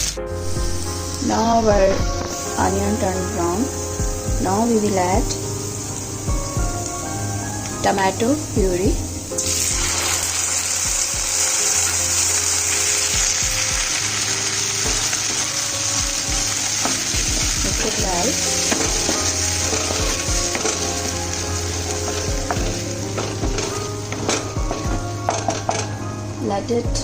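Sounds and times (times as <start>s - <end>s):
tomato puree sizzling in oil: 0.0s - 26.4s
spoon stirring and knocking pan: 14.8s - 15.6s, 16.2s - 26.0s.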